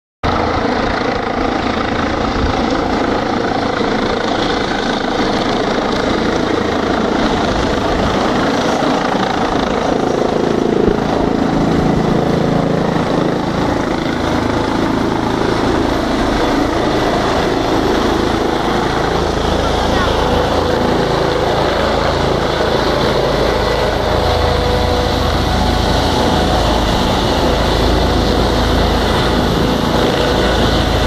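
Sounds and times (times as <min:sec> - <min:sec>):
helicopter engine and rotor noise: 0:00.2 - 0:31.0.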